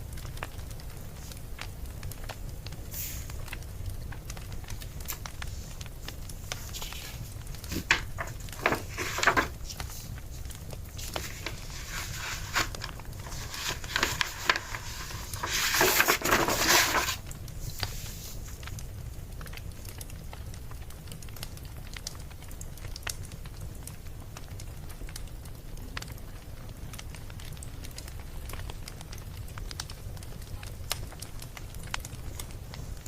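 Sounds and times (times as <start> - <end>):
low steady hum: 0.0 - 33.0
wood fire crackling and popping: 0.0 - 33.0
rustle: 4.8 - 18.8.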